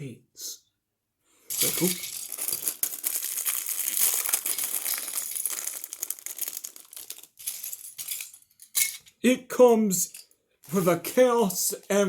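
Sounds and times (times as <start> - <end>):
plastic bag crinkling: 1.5 - 8.7, 10.6 - 12.0.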